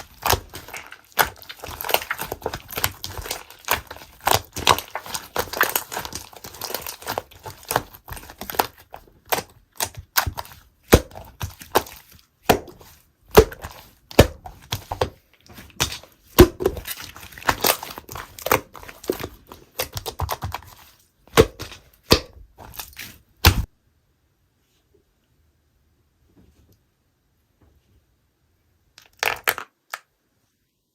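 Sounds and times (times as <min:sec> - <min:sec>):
slime popping and crackling: 0:00.0 - 0:20.6.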